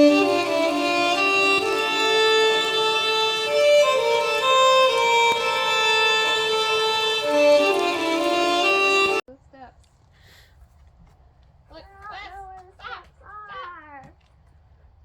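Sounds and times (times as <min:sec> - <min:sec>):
fiddle melody: 0:00.0 - 0:09.3.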